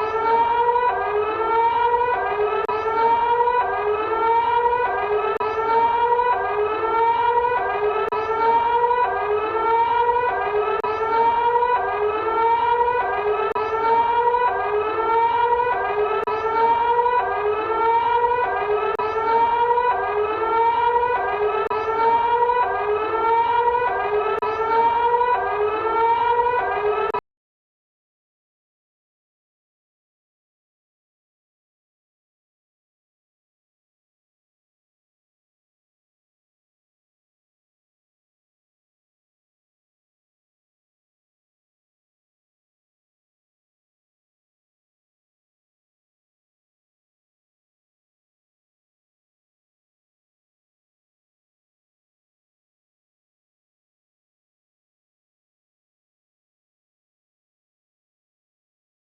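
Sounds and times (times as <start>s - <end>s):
electronic emergency alert siren: 0.0s - 27.2s.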